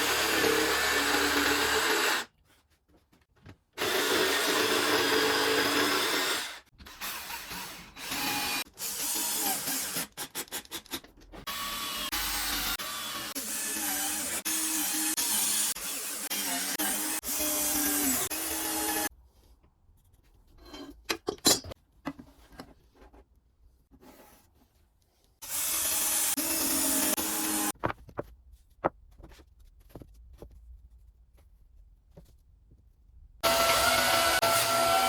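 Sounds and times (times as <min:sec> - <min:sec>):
power tool cutting wood: 0:00.0 - 0:02.3, 0:03.8 - 0:10.0, 0:11.5 - 0:19.1, 0:25.4 - 0:27.8, 0:33.4 - 0:35.0.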